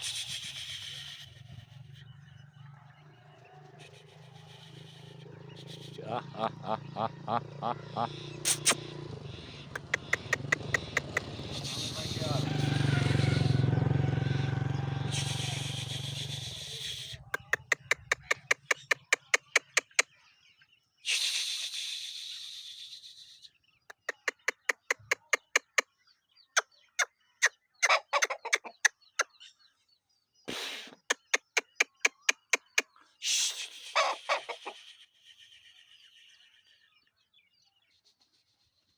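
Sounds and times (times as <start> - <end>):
chicken clucking: 3.6 - 8.8, 9.6 - 20.0, 23.9 - 25.8, 27.8 - 29.0, 33.8 - 34.8.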